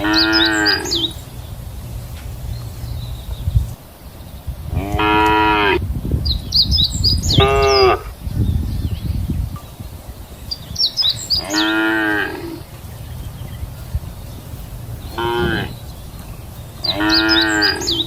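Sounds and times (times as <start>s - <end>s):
cows mooing: 0.0s - 1.2s, 4.7s - 5.8s, 7.3s - 8.1s, 11.3s - 12.8s, 14.8s - 16.0s, 16.7s - 18.0s
small birds chirping: 0.0s - 18.0s.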